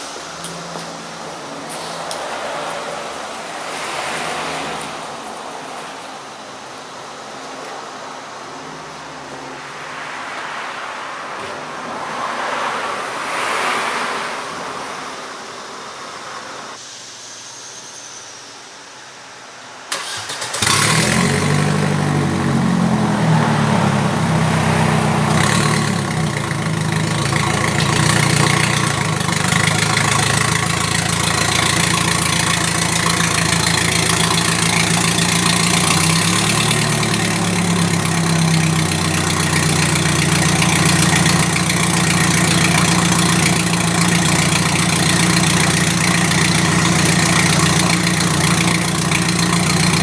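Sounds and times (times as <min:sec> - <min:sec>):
car engine starting and idling: 0:19.9 - 0:50.0.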